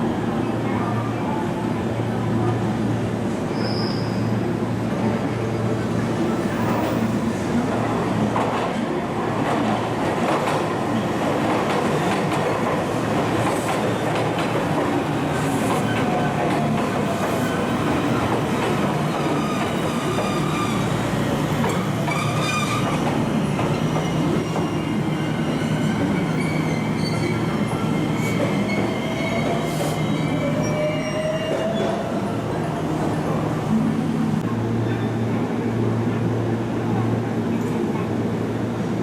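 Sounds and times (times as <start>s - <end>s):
faint wheel squeal: 3.5s - 4.3s.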